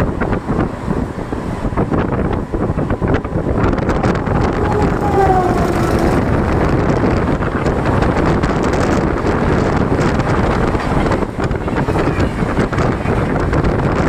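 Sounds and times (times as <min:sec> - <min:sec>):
train running at speed: 0:00.0 - 0:14.0
brief falling tone: 0:03.9 - 0:07.4.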